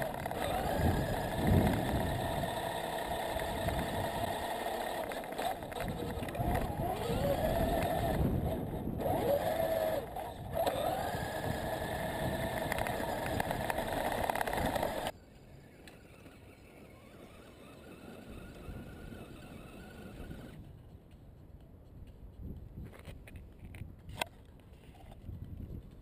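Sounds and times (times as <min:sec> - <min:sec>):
electric motor and gears whining: 0:00.0 - 0:20.7.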